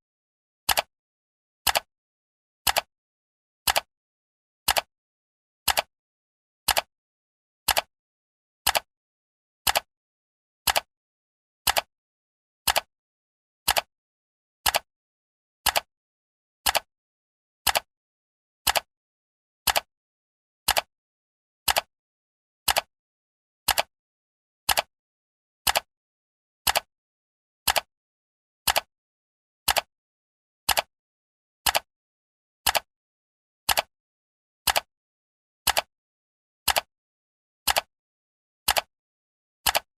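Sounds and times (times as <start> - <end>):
timer ticking: 4.7 - 4.9, 5.7 - 5.9, 6.7 - 6.9, 7.7 - 7.9, 10.7 - 10.9, 11.7 - 11.9, 12.7 - 12.9, 13.7 - 13.9, 14.7 - 14.9, 20.7 - 20.9, 21.7 - 21.9, 27.7 - 27.9, 28.7 - 28.9, 29.7 - 29.9, 30.7 - 30.9, 34.7 - 34.9, 35.7 - 35.9, 36.7 - 36.9, 38.7 - 38.9, 39.6 - 39.9.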